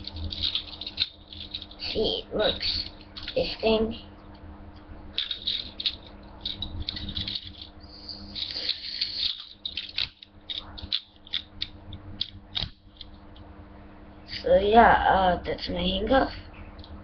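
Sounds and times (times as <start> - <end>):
toy handcuffs rattling and clicking: 0.0 - 3.7, 5.1 - 13.1.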